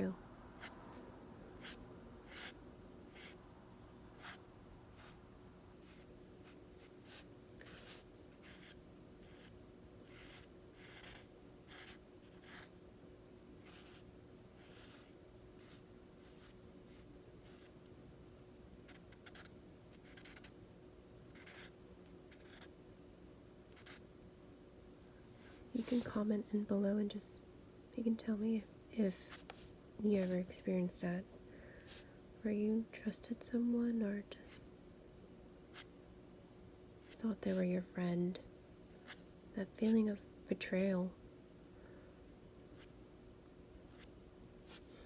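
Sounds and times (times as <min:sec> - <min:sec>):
faint steady hum: 0:00.0 - 0:45.0.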